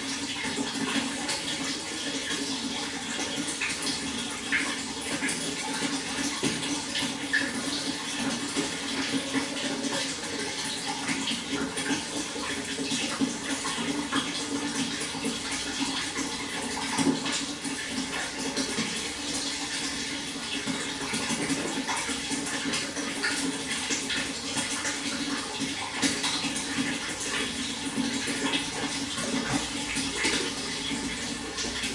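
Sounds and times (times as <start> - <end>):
water flowing and splashing: 0.0 - 31.9.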